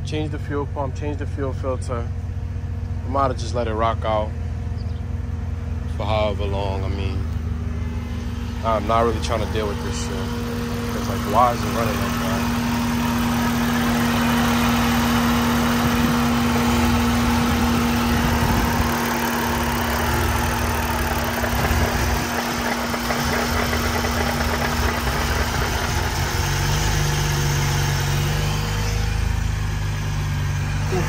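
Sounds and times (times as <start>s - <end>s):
car engine idling rough: 0.0s - 31.0s.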